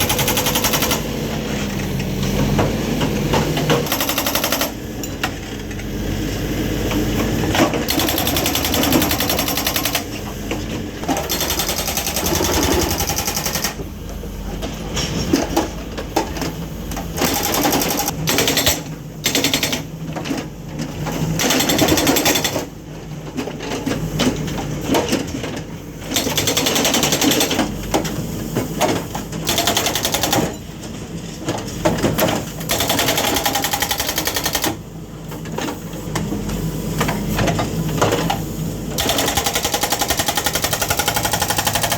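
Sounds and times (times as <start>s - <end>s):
hydraulic breaker hammer pounding: 0.0s - 1.2s, 2.4s - 4.8s, 7.6s - 10.1s, 11.0s - 13.8s, 39.0s - 41.9s
machine engine running: 0.0s - 4.8s.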